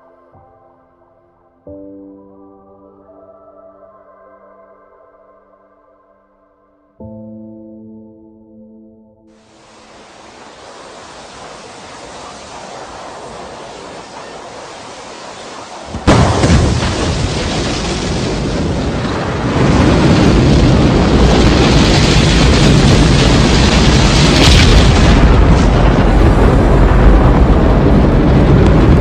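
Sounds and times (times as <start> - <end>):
rocket launch rumble: 9.6 - 29.0
loud crackling rocket blast: 9.7 - 29.0.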